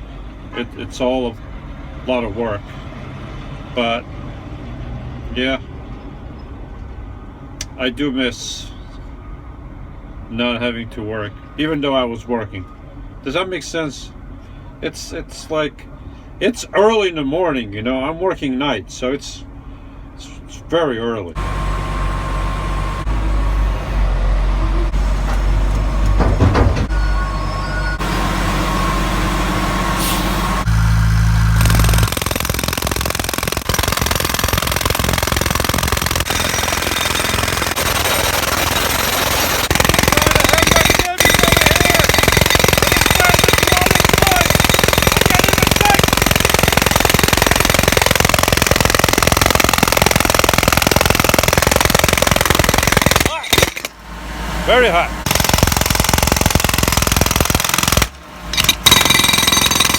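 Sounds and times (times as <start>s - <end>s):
low steady engine hum: 0.0s - 32.0s
rattling machine with rapid hammering: 26.2s - 26.9s, 31.6s - 53.9s, 55.2s - 59.9s.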